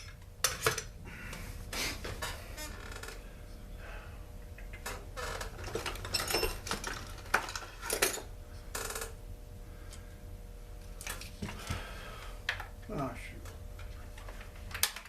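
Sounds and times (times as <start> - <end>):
steady low hum: 0.0 - 15.0
metal parts clinking on workbench: 5.6 - 8.3.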